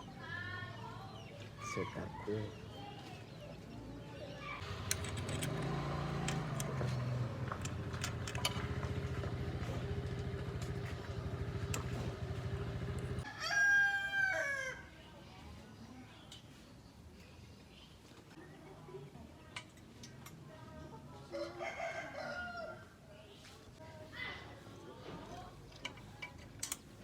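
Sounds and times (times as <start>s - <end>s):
small two-stroke engine running: 4.6s - 13.3s
rooster crowing: 13.2s - 14.9s, 21.4s - 22.8s.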